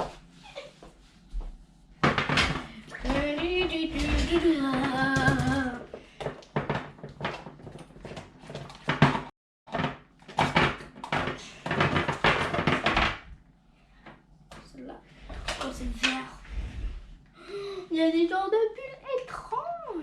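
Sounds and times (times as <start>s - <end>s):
person humming: 3.4s - 5.9s.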